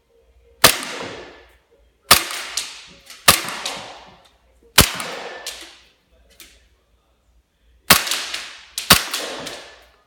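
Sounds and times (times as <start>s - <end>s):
airsoft pistol shots: 0.6s - 1.4s, 2.1s - 4.1s, 4.8s - 5.8s, 7.9s - 9.8s.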